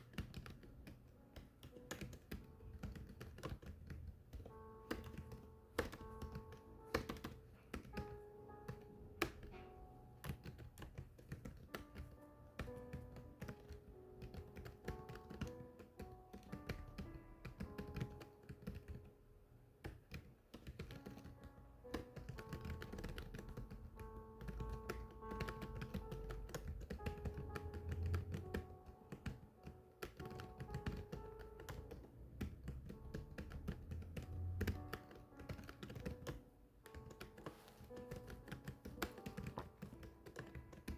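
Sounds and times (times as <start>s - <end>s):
background music: 0.0s - 40.9s
keyboard typing: 0.0s - 40.9s.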